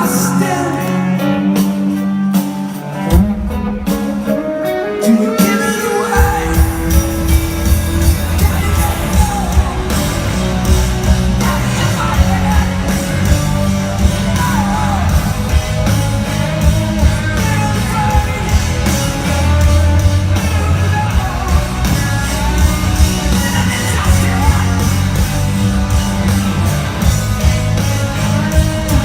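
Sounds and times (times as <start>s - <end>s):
person singing: 0.0s - 3.3s, 4.2s - 25.3s
distorted guitars and bass: 0.0s - 29.0s
drum beat: 6.2s - 29.0s.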